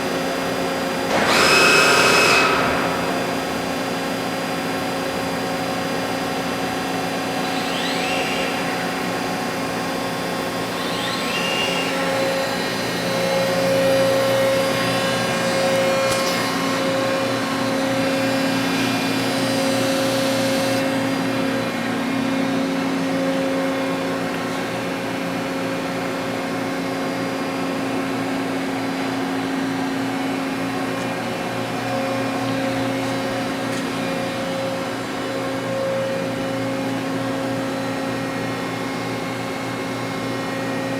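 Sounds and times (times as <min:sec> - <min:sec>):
machine hum: 0:00.0 - 0:26.4
rising machine whines: 0:01.0 - 0:24.2.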